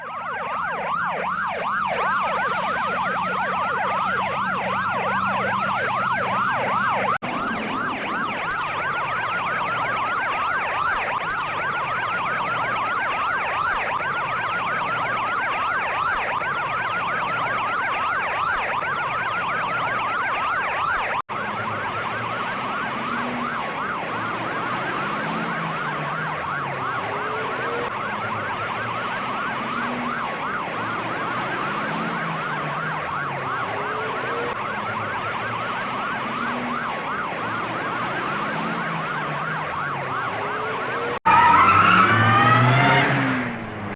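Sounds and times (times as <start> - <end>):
warbling police siren: 0.0 - 43.9.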